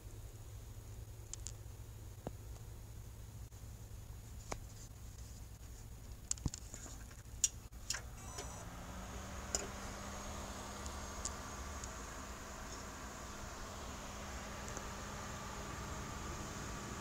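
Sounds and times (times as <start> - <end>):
computer humming: 7.8 - 17.0
steady low tone: 7.8 - 17.0
hard drive clicking: 14.2 - 16.8.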